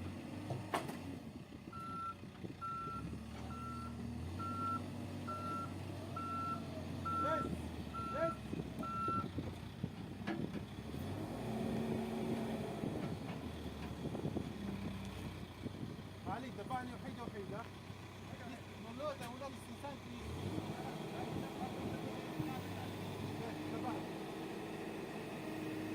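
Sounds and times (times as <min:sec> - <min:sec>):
low engine hum: 0:00.0 - 0:25.9
reversing alarm beeps: 0:01.8 - 0:09.2.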